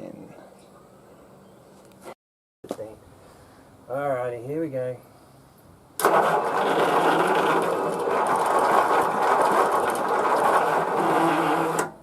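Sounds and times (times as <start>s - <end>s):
electric starter cranking engine: 6.0s - 12.0s.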